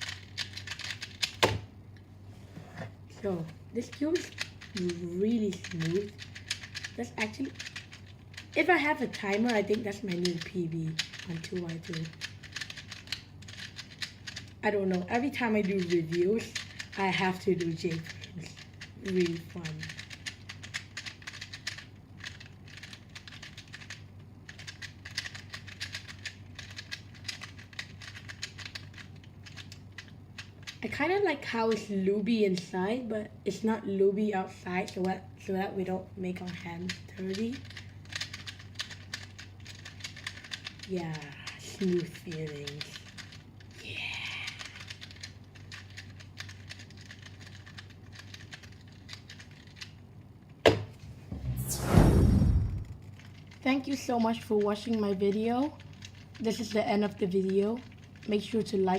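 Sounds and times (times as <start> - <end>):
puzzle cube plastic clicking: 0.0 - 1.6, 3.9 - 30.8, 36.8 - 40.9, 44.4 - 50.6, 55.8 - 56.7.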